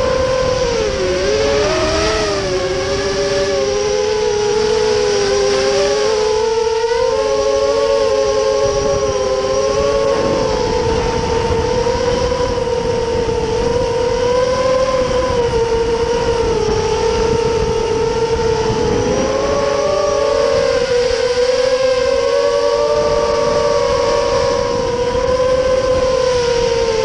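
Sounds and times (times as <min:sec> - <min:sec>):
drone motors whining: 0:00.0 - 0:27.0.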